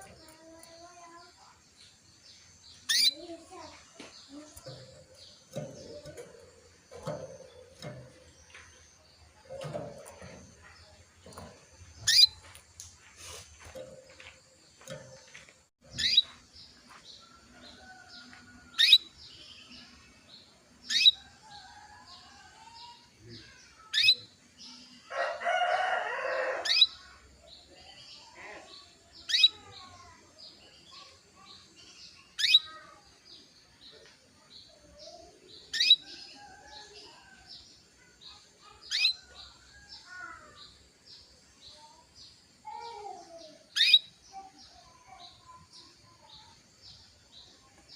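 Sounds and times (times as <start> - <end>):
canary chirp calls: 2.7 - 12.5, 13.2 - 16.4, 17.2 - 19.9, 20.9 - 30.2, 31.0 - 33.0, 35.0 - 40.8, 42.7 - 46.6.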